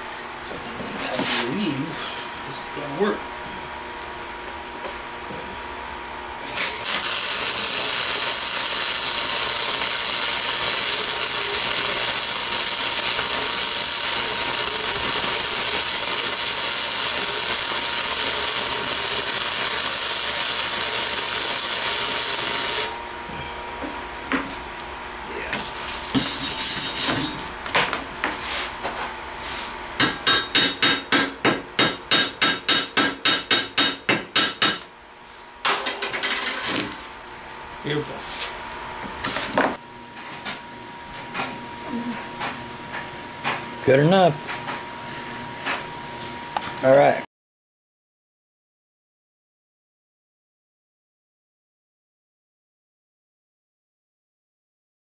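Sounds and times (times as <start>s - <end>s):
power tool running: 6.4s - 23.1s.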